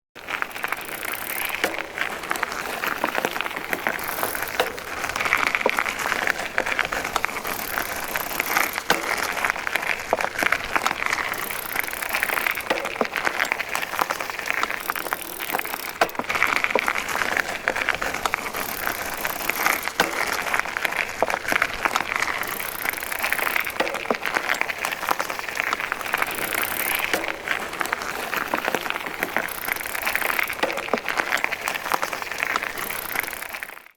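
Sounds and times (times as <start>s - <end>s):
bicycle chain and tyres rattling: 0.2s - 33.9s
small clicks: 0.3s - 33.9s.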